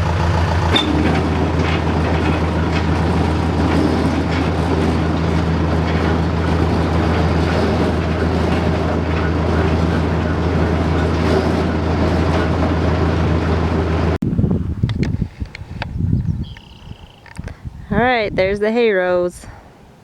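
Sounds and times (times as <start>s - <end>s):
vehicle engine running: 0.0s - 15.7s.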